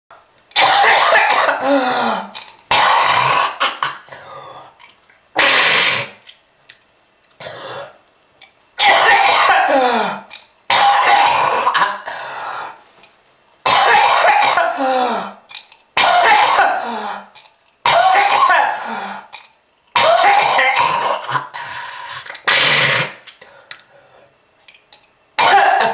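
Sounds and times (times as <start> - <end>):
person coughing: 0.6 - 4.4, 8.8 - 12.3, 13.7 - 15.4, 16.0 - 17.3, 17.9 - 19.0, 20.0 - 21.5, 25.4 - 25.9.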